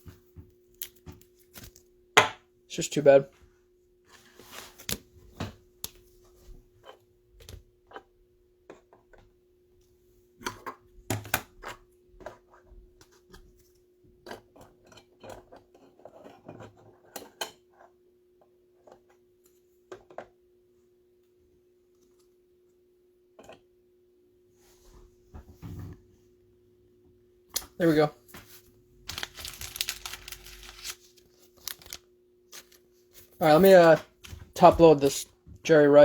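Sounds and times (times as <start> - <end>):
trading cards clicking and rustling: 27.6 - 35.1.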